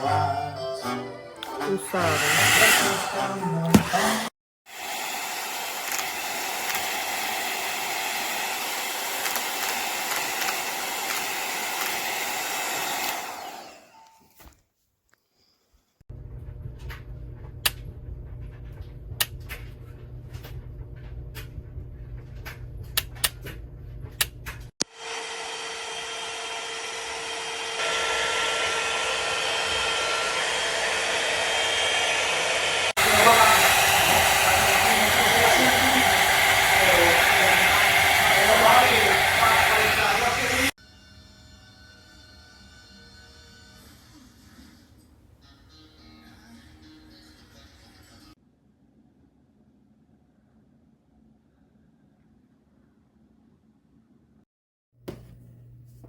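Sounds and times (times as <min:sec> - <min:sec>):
blow-dryer brush whine: 0:01.6 - 0:14.1, 0:24.8 - 0:40.8.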